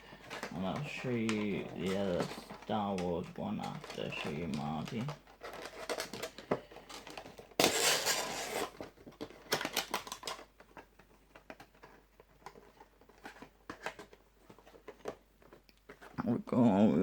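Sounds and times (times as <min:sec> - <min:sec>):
box scraping rustle: 0:00.0 - 0:02.9, 0:07.0 - 0:09.4
plastic figures clicking and tapping: 0:00.1 - 0:07.5.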